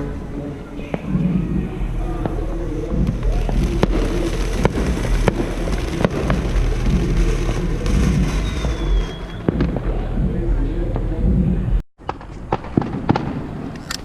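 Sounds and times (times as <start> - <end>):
fireworks bangs: 0.0 - 13.8
fireworks rumble and crackle: 0.0 - 14.0
firework whistle: 2.2 - 9.9.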